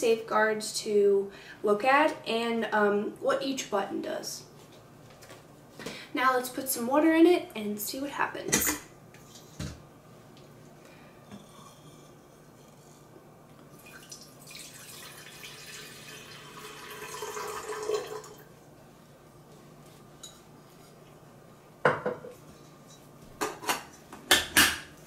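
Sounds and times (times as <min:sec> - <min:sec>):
water pouring into a kettle: 0:13.8 - 0:18.5.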